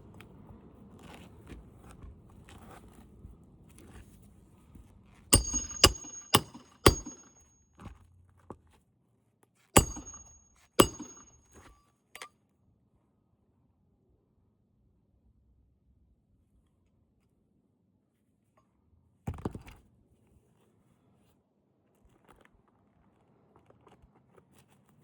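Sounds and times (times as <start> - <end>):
hammer striking nails: 5.4 - 7.4, 9.8 - 11.4.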